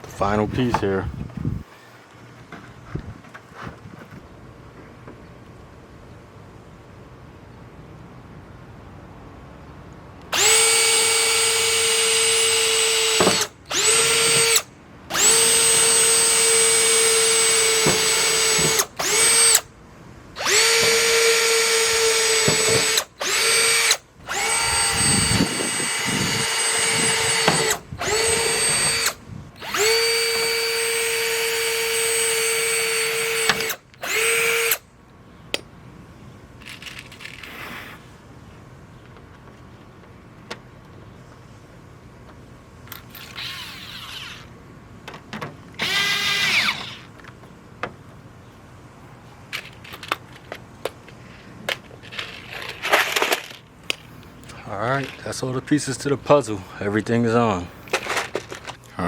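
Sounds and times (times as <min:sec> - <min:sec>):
power drill whining: 0:10.3 - 0:19.7, 0:20.4 - 0:34.8, 0:43.2 - 0:44.5, 0:45.8 - 0:47.1.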